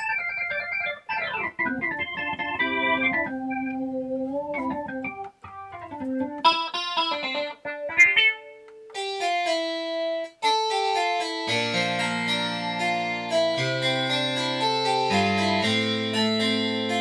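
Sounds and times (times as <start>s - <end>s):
keytar plucked-string melody: 1.6s - 17.0s.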